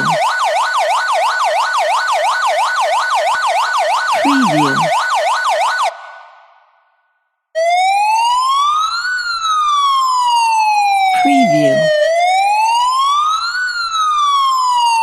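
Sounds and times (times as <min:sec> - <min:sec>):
police siren yelping: 0:00.0 - 0:00.6, 0:04.2 - 0:05.1, 0:09.5 - 0:13.2.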